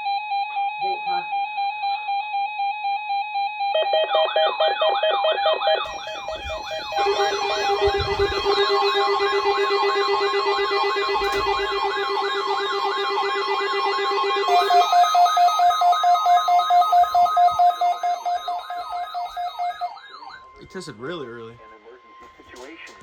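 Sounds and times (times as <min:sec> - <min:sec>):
siren-like warble: 0:00.0 - 0:21.0
pulsing beeps: 0:05.8 - 0:20.6
low steady tone: 0:05.9 - 0:19.5.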